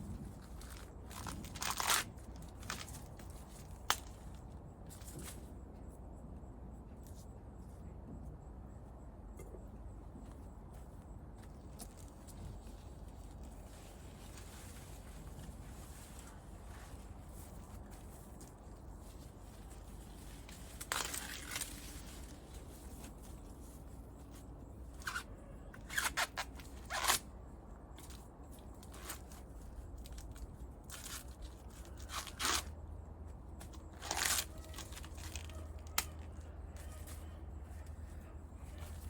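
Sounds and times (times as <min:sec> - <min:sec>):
leaves rustling: 0:00.2 - 0:05.5, 0:11.8 - 0:27.2, 0:33.6 - 0:39.0.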